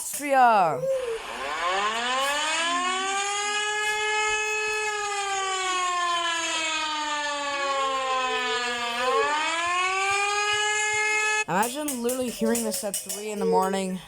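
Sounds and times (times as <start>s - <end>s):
civil defence siren wailing: 0.5s - 11.6s.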